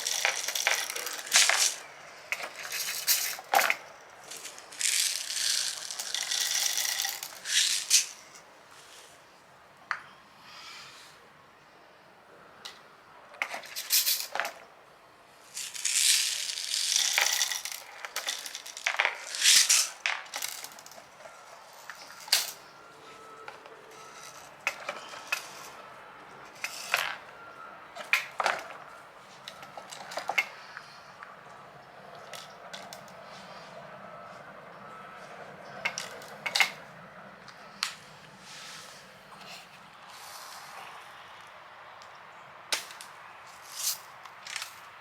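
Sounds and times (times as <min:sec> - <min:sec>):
small metal objects rattling: 0:00.0 - 0:01.8, 0:02.4 - 0:08.2, 0:15.6 - 0:21.0.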